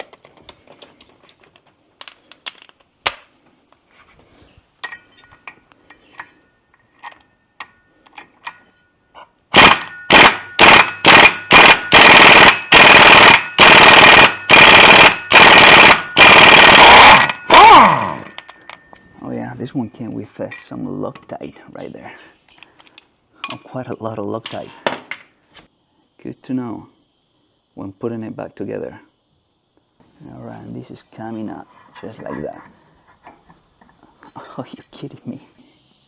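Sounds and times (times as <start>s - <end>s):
impact wrench hammering: 9.5s - 18.7s.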